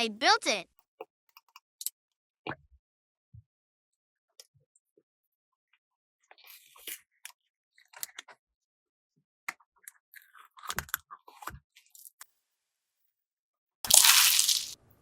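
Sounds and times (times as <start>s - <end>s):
plastic toys and packaging handled: 13.9s - 14.8s.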